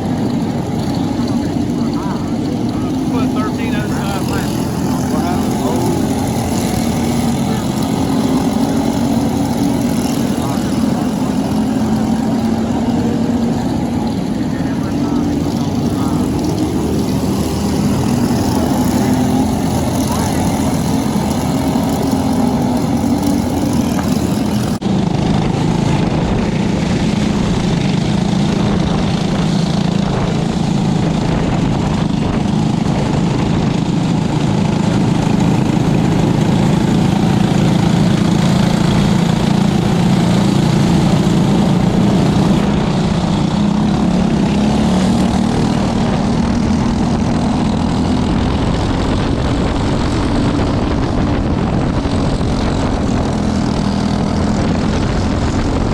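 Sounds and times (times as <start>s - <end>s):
kart engines droning: 0.0s - 55.9s.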